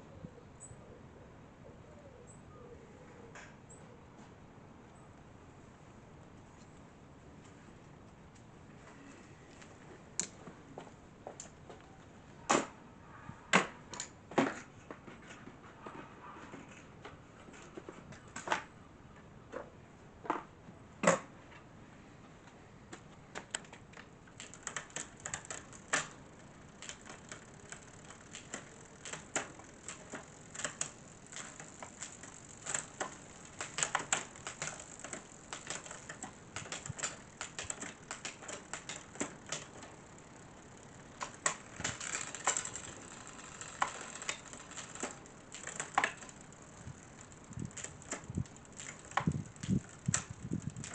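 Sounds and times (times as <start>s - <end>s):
metallic clicks and ticks: 23.4s - 50.9s.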